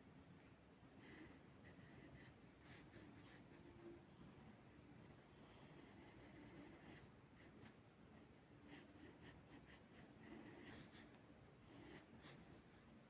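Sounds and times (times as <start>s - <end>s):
low room hum: 0.0s - 13.0s
pencil scratching on paper: 4.6s - 7.1s, 8.2s - 12.7s.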